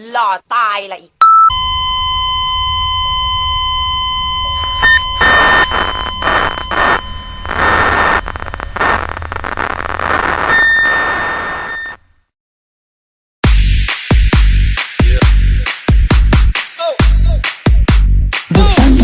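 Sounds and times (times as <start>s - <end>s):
beep-like test tone: 1.2s - 8.3s
loud static bursts: 1.5s - 12.0s
low hum: 1.5s - 12.0s
high whine: 1.5s - 12.2s.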